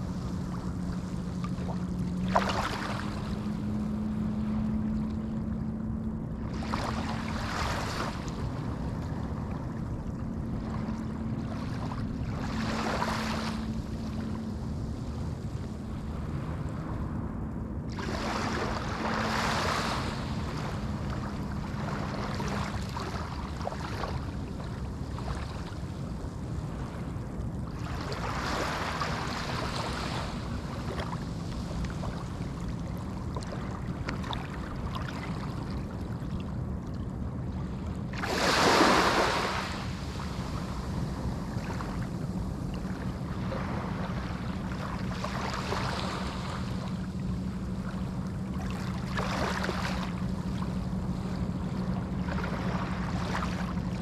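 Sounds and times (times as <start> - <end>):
waves breaking on a beach: 0.0 - 17.1, 17.9 - 54.0
steady low rumble: 0.0 - 54.0.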